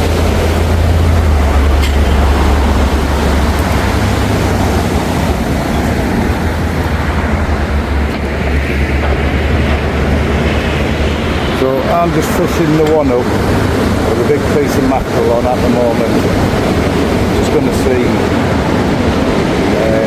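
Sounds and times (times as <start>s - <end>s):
sea surf rushing: 0.0s - 20.0s
wind buffeting microphone: 0.0s - 20.0s.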